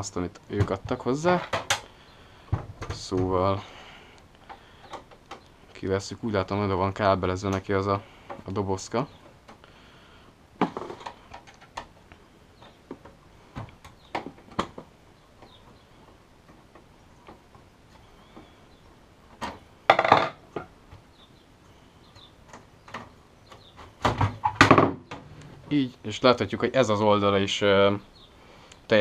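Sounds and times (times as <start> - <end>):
clicks and knocks of hard parts: 0.6 - 1.9, 19.3 - 21.0.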